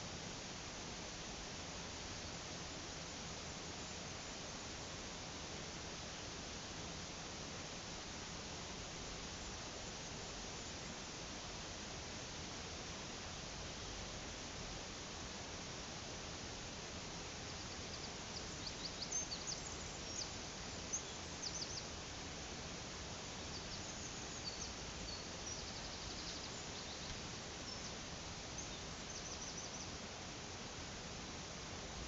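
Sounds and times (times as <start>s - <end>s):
small birds chirping and trilling: 17.5s - 21.9s, 23.5s - 30.0s.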